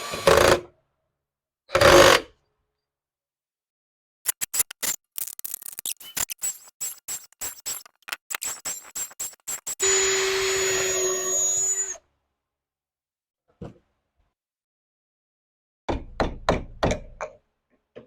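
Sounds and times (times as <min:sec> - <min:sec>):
power drill boring: 0:06.4 - 0:12.0.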